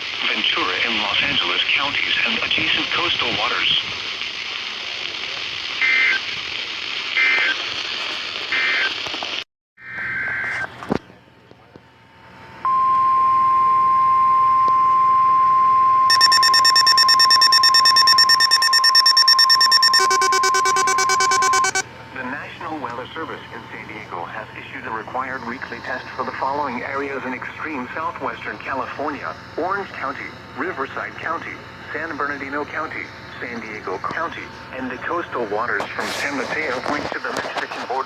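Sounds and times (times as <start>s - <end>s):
steady warning alarm tone: 12.6s - 21.8s
pulsing electronic alarm: 12.7s - 21.8s
warbling data bursts: 16.1s - 21.8s.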